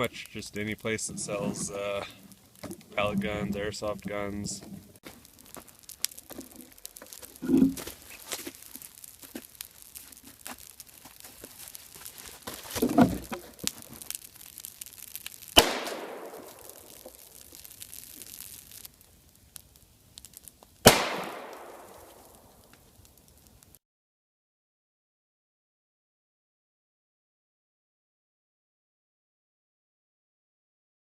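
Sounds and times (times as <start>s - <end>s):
small crackles and ticks: 0.0s - 23.8s
gas cartridges bursting bangs: 11.9s - 18.4s, 20.8s - 22.6s.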